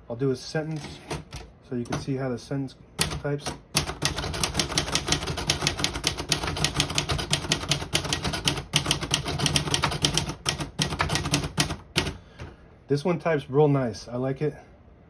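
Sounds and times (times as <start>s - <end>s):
typewriter keys clacking: 3.0s - 12.2s.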